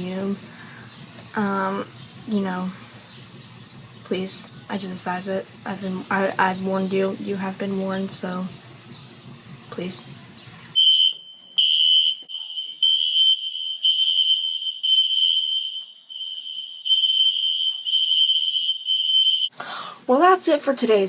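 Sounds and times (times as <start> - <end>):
fire alarm tone: 10.7 - 19.5.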